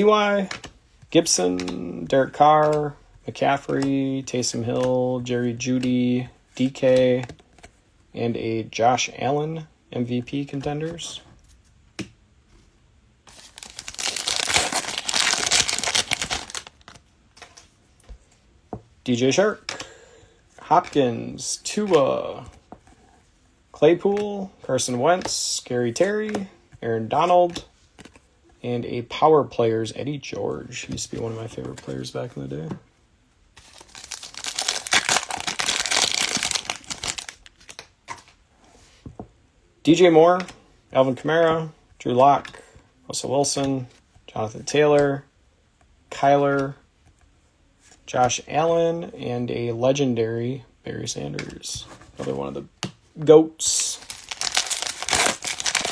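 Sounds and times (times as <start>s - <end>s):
wrapper crinkling and tearing: 13.3s - 16.9s, 33.6s - 37.5s, 53.7s - 55.9s.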